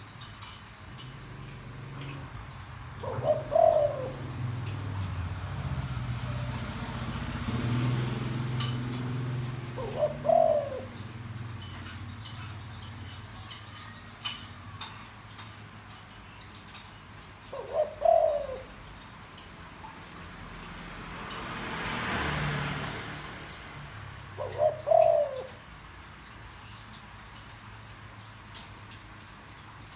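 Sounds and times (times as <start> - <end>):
dove cooing: 1.0 - 14.9, 17.4 - 19.0, 24.0 - 26.0.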